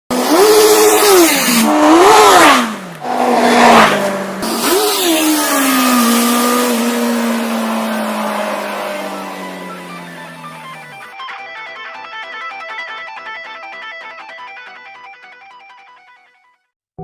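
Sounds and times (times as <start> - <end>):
motorcycle engine revving: 0.1 - 11.1.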